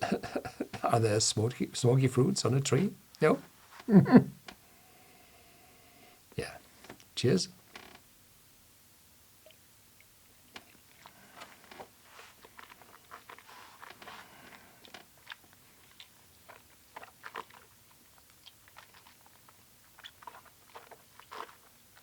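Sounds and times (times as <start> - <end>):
sipping and mouth sounds: 10.5 - 22.0
wet clicks and lip smacks: 14.8 - 21.8.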